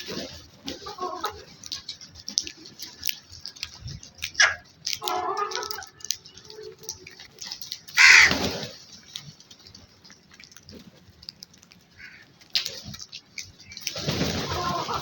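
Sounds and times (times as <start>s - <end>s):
crow cawing: 8.0s - 8.4s, 12.0s - 12.3s.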